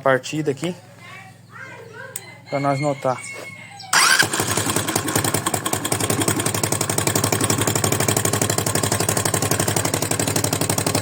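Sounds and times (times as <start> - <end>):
motorcycle engine starting and idling: 3.8 - 11.0.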